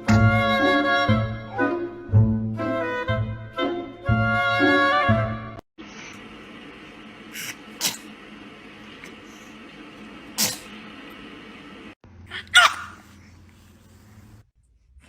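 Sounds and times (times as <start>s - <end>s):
baby sneezing: 7.4s - 8.2s, 10.4s - 10.7s, 12.3s - 13.2s.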